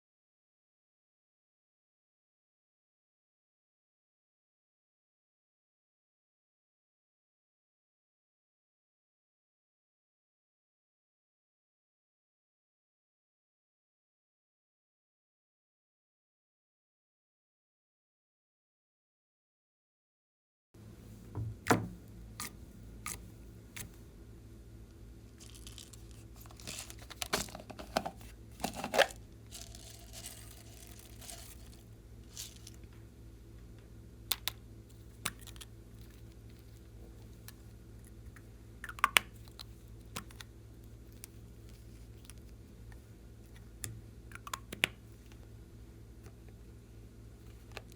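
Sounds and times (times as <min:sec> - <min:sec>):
low steady hum: 0:20.8 - 0:47.9.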